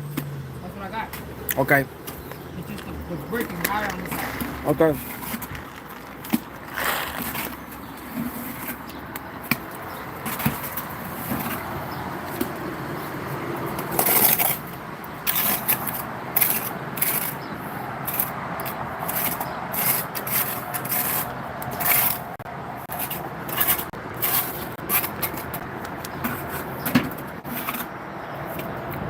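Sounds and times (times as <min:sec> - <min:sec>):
trowel scraping wet mortar: 0:02.6 - 0:08.8, 0:18.1 - 0:25.6.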